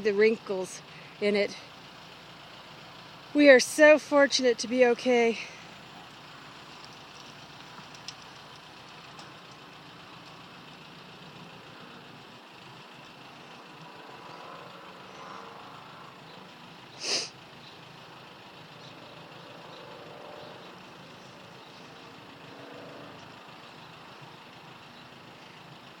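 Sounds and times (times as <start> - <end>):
vehicle engine idling: 0.0 - 26.0
short sharp hiss: 17.0 - 17.3.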